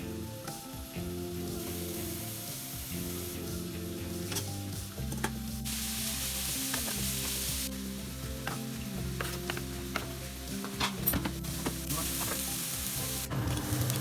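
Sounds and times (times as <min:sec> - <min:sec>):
food sizzling in a frying pan: 0:00.0 - 0:14.0
soft background music: 0:00.0 - 0:14.0
burst of hiss: 0:01.4 - 0:04.7, 0:05.5 - 0:13.3.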